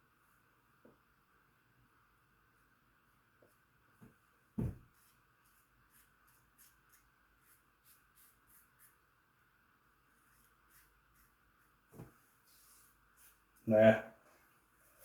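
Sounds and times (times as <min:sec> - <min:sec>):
low thump: 0:04.6 - 0:04.8.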